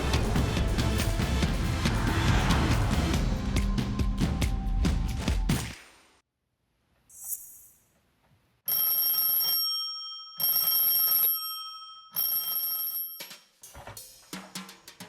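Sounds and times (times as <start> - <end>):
bell ringing: 8.7 - 13.4.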